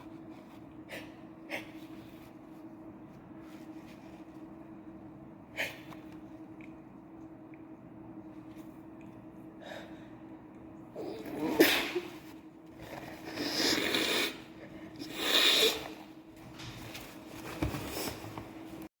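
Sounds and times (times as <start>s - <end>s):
woman sneezing: 11.3s - 12.2s.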